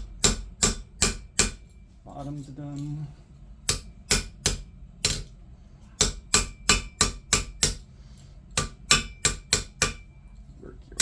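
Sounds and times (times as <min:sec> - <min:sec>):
hammer striking wire on anvil: 0:00.0 - 0:01.9, 0:03.6 - 0:07.9, 0:08.5 - 0:10.2.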